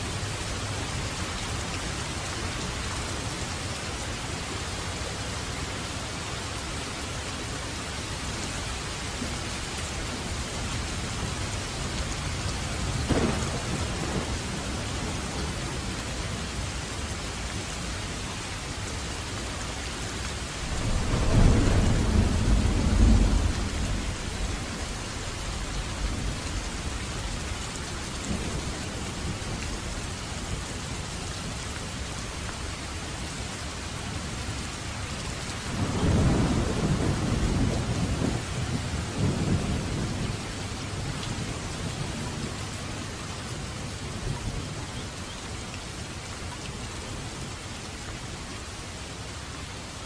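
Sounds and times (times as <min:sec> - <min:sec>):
steady rain: 0:00.0 - 0:50.0
thunder rumbling: 0:12.5 - 0:16.6, 0:20.5 - 0:27.6, 0:35.6 - 0:42.6.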